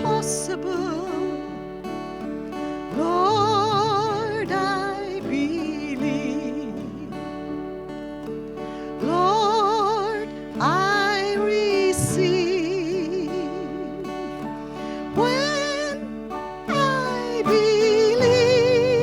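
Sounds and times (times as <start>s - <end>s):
person singing with vibrato: 0.0s - 8.0s, 8.6s - 19.0s.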